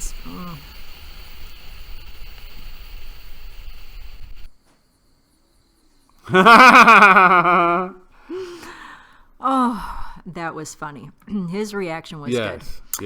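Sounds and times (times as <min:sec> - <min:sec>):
high hiss with thin whine: 0:00.0 - 0:07.4.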